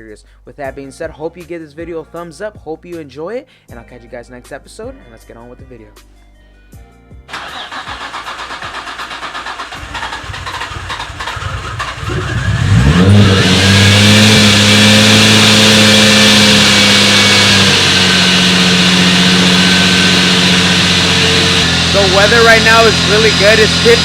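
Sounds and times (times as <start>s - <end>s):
car engine starter cranking: 7.3s - 14.7s
car engine idling: 7.3s - 24.0s.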